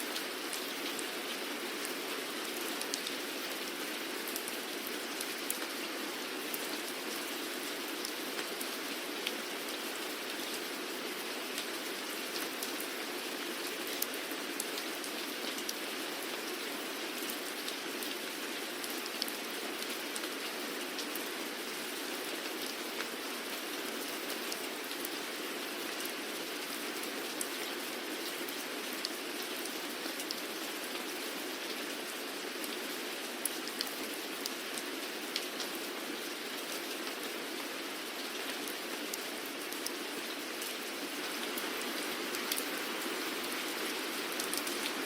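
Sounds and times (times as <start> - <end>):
steady rainfall: 0.0 - 45.0.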